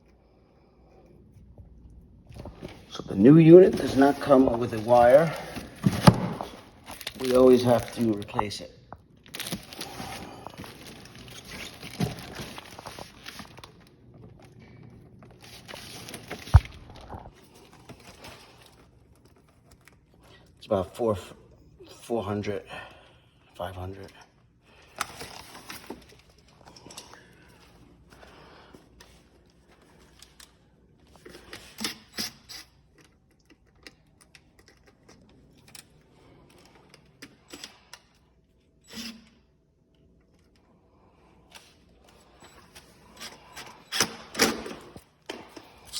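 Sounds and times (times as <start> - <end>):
rustling and scraping: 2.3 - 8.5, 9.3 - 14.6, 15.2 - 19.8.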